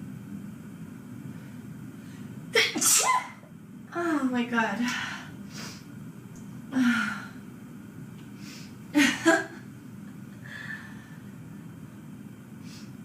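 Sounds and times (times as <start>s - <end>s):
faint breath: 8.4s - 8.8s, 10.4s - 11.3s, 12.6s - 13.0s.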